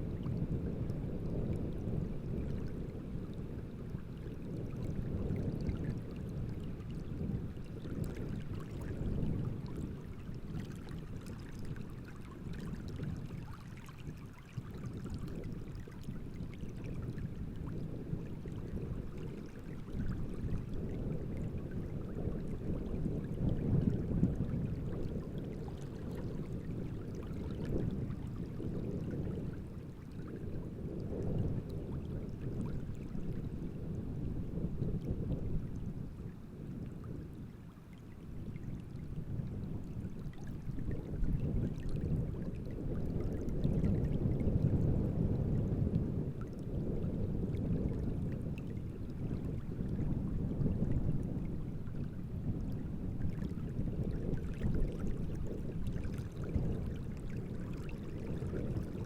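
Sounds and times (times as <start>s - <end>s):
wind gusting over water: 0.0s - 59.0s
small waves splashing: 3.8s - 30.5s.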